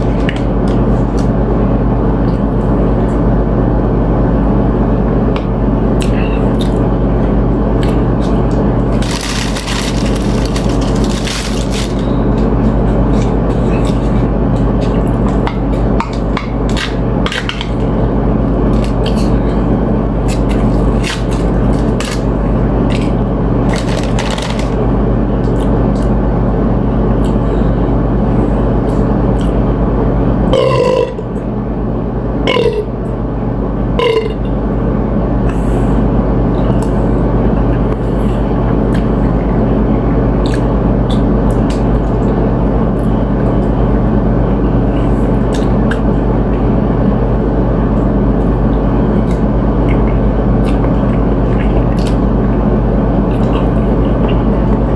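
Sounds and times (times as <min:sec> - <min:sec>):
loud low hum: 0:00.0 - 0:54.9
crunching chips being eaten: 0:07.8 - 0:15.4, 0:20.2 - 0:24.8
person burping: 0:30.6 - 0:31.3, 0:32.5 - 0:32.9, 0:34.0 - 0:34.5.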